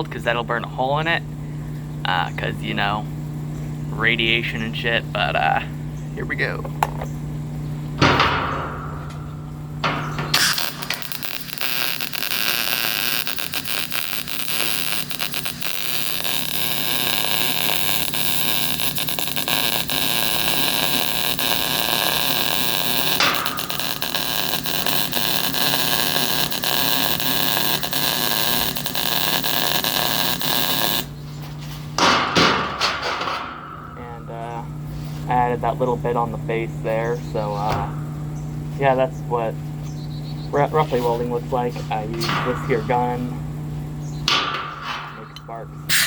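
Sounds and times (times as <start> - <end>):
steady low hum: 0.0 - 46.0
welding arc crackling: 8.8 - 31.3, 40.6 - 46.0
loud knocks: 32.0 - 34.0.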